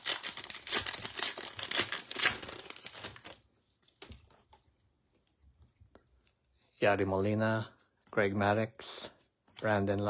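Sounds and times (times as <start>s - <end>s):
wrapper crinkling and tearing: 0.0s - 4.4s.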